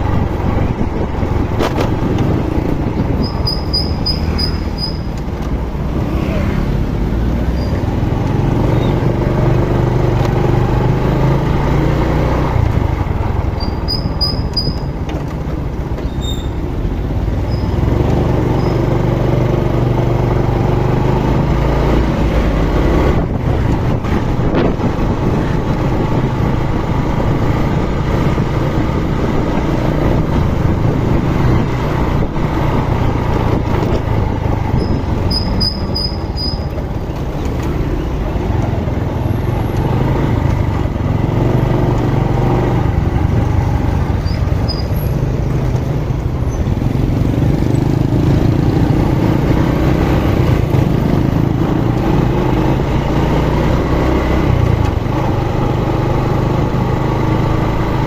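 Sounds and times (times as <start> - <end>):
small motorcycle engine: 0.0 - 5.2, 5.9 - 15.0, 16.0 - 58.0
wind and road noise: 0.0 - 58.0
short high chirps: 3.2 - 5.1.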